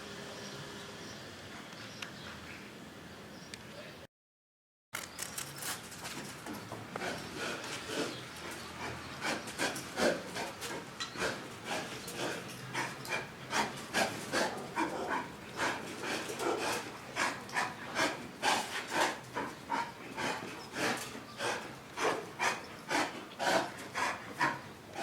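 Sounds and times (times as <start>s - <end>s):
dog panting: 6.9s - 25.0s.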